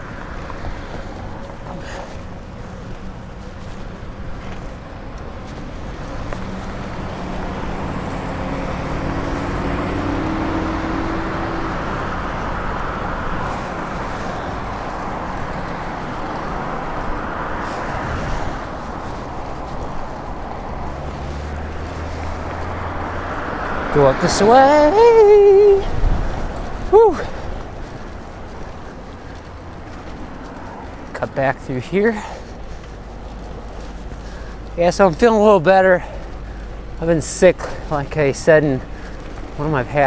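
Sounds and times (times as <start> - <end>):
cars passing on busy road: 0.0 - 40.0.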